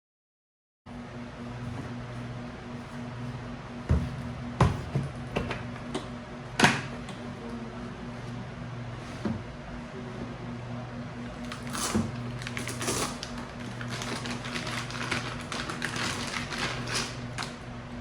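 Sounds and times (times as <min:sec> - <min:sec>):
steady low hum: 0:00.9 - 0:18.0
packaging clicks and rustles: 0:11.5 - 0:17.6.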